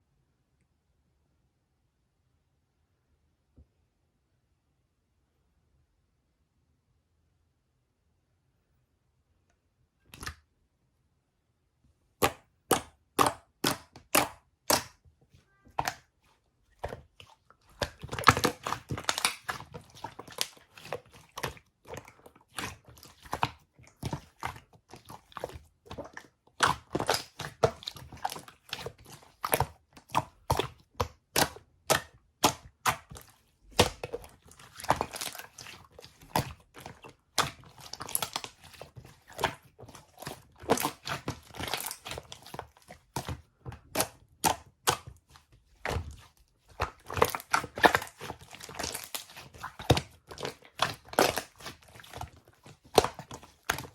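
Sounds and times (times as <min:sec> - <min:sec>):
slime popping and crackling: 0:17.7 - 0:45.2, 0:45.8 - 0:53.9.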